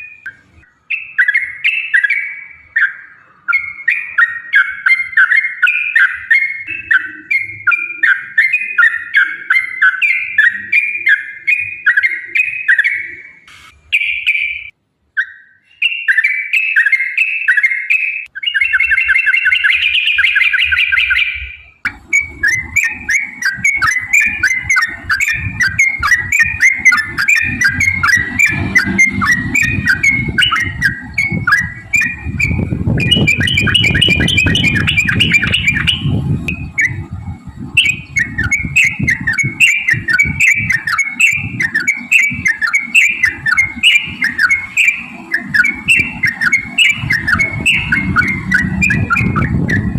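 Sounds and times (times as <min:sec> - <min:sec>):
bird chirping song: 0:00.0 - 0:49.9
low rumbling noise: 0:21.6 - 0:49.9.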